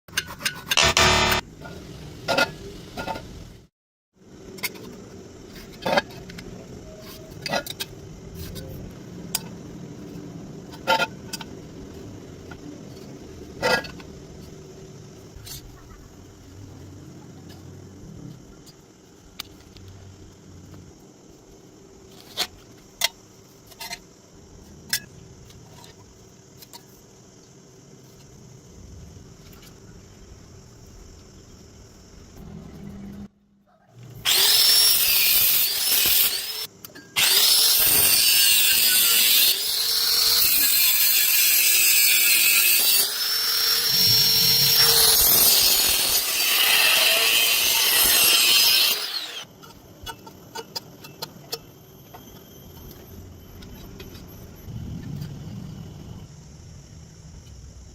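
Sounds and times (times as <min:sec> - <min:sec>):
angle grinder grinding metal: 0:00.7 - 0:01.4, 0:34.2 - 0:49.5.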